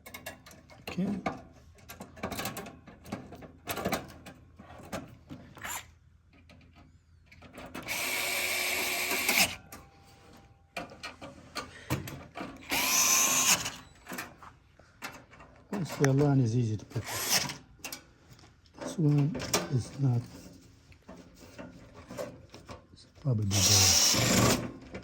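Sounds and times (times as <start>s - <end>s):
power drill-driver whining: 7.8s - 9.6s, 12.6s - 13.9s, 17.0s - 17.6s, 23.4s - 24.8s.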